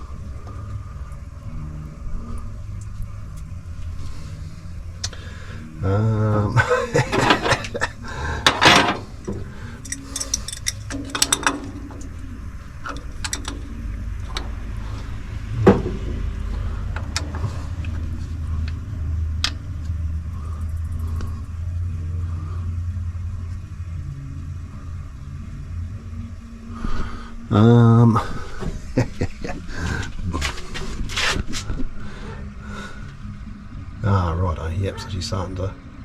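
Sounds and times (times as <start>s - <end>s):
steady low hum: 0.0s - 36.0s
hand tools clicking on metal: 8.4s - 12.2s, 12.8s - 13.7s.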